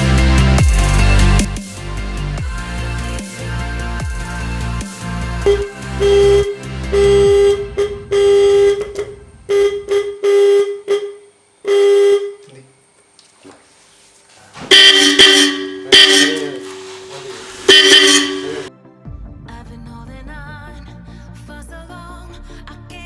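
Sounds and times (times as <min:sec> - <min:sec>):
car horn beeps: 0:05.4 - 0:12.6, 0:14.7 - 0:18.7
two-note car horn honks: 0:05.4 - 0:12.6, 0:14.7 - 0:18.7.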